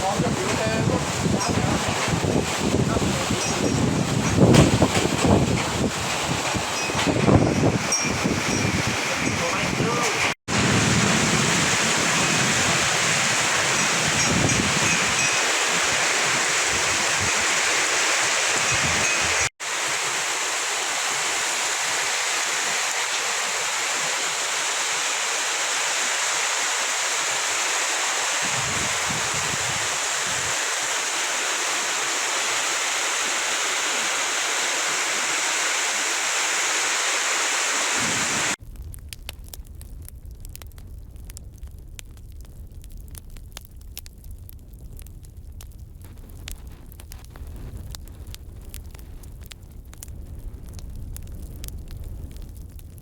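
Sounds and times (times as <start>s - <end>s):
heavy rain pouring: 0.0s - 38.6s.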